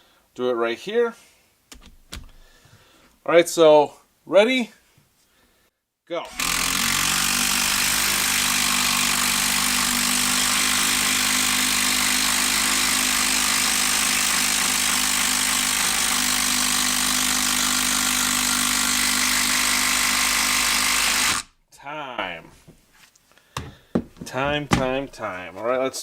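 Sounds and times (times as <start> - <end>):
impact driver hammering screw into wood: 6.3 - 21.5.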